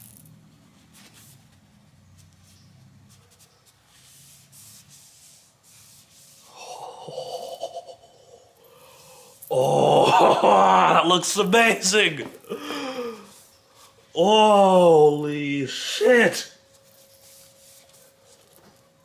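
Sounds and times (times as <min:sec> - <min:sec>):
voice-like murmur: 0:06.6 - 0:08.5, 0:09.5 - 0:11.2.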